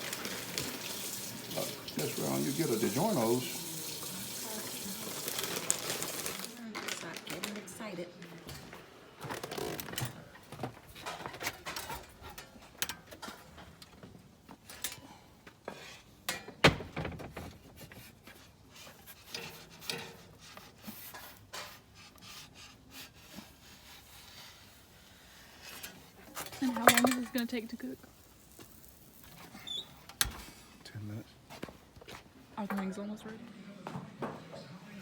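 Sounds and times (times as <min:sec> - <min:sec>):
rubbing and scraping on wood: 0:17.3 - 0:27.7.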